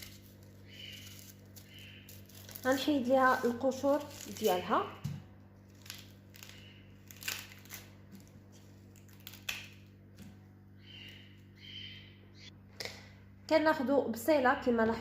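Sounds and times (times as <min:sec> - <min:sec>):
onion skin crackling and rustling: 0:00.0 - 0:10.0.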